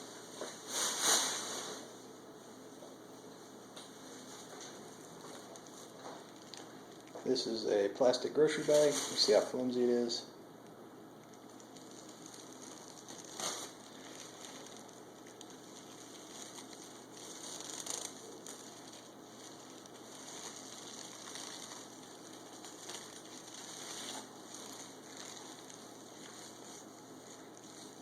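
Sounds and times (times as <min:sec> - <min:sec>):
plastic bag crinkling: 0:04.6 - 0:07.7, 0:08.4 - 0:10.1, 0:11.2 - 0:28.0.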